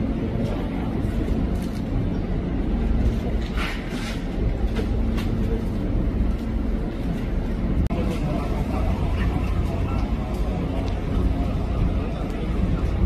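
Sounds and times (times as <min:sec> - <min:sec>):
low engine rumble: 0:00.0 - 0:13.0.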